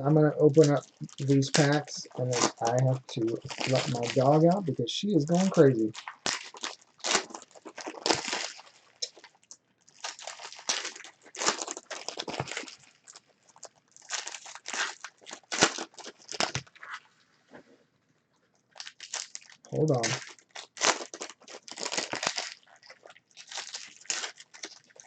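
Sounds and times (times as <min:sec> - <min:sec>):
foil packs tearing and crinkling: 0:00.6 - 0:04.6, 0:05.3 - 0:16.8, 0:18.8 - 0:25.0.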